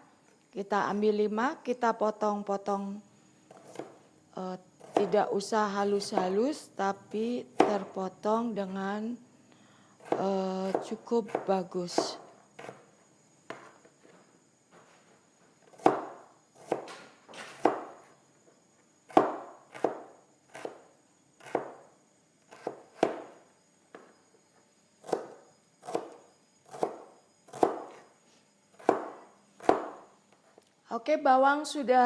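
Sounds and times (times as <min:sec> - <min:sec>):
knife chopping on cutting board: 0:03.5 - 0:04.0, 0:04.8 - 0:05.2, 0:10.0 - 0:12.8, 0:15.7 - 0:18.0, 0:19.1 - 0:20.8, 0:21.4 - 0:21.8, 0:22.5 - 0:23.3, 0:25.0 - 0:28.0, 0:28.8 - 0:30.0.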